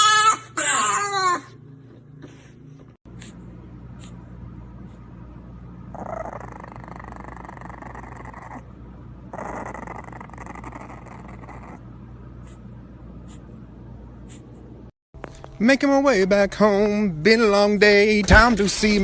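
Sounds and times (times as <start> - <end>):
dog growling: 5.9 - 12.0.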